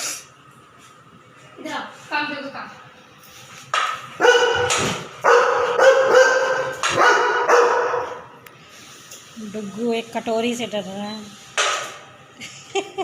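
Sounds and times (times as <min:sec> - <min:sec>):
dog barking: 0:04.2 - 0:08.3.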